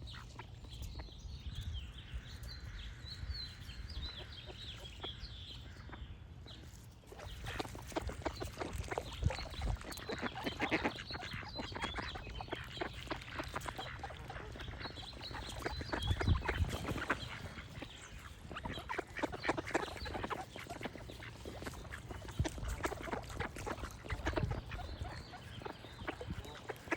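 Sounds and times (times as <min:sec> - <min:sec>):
small birds chirping: 0:00.0 - 0:26.9
ducks quacking: 0:07.2 - 0:26.9.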